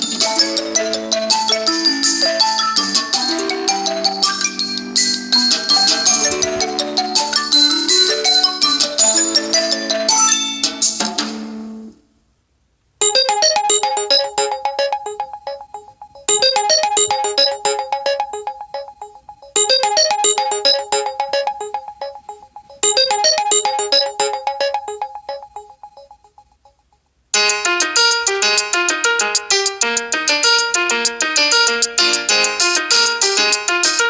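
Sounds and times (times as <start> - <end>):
electric piano ringtone melody: 0.0 - 10.7, 13.0 - 26.2, 27.4 - 34.0.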